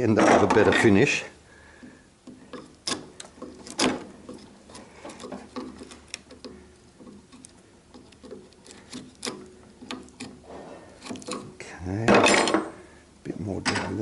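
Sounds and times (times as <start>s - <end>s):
chisel tapping and scraping wood: 1.8s - 11.5s.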